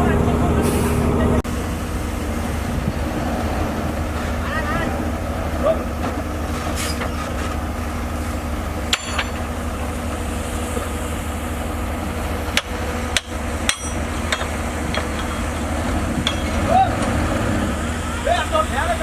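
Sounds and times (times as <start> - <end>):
bulldozer diesel engine running: 0.0 - 19.0
sharp metallic clanks: 8.9 - 9.5, 12.6 - 15.6, 16.2 - 17.1.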